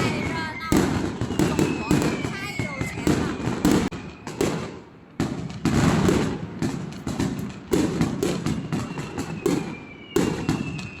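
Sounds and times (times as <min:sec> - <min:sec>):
fireworks bangs: 0:00.0 - 0:11.0
thin high whistle: 0:08.5 - 0:11.0.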